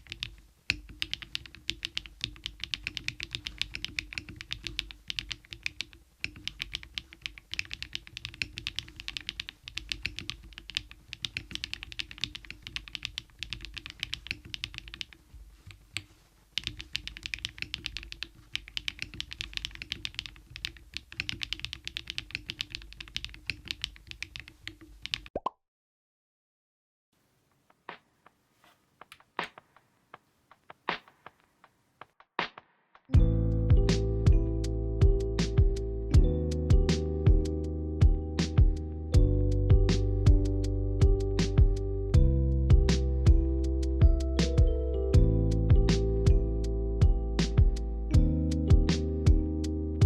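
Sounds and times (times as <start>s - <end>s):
mechanical keyboard typing: 0.0s - 25.3s.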